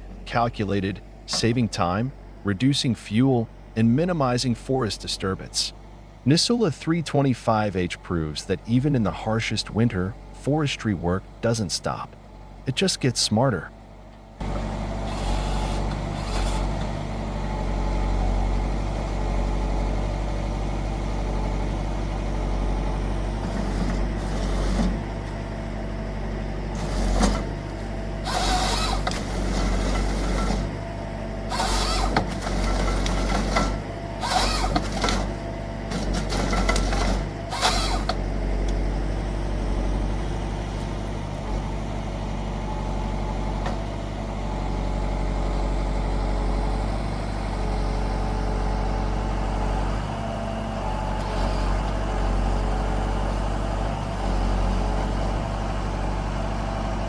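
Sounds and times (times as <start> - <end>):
harvester engine running: 0.0 - 57.0
machine working bursts: 14.4 - 16.8, 28.2 - 30.8, 31.5 - 38.2.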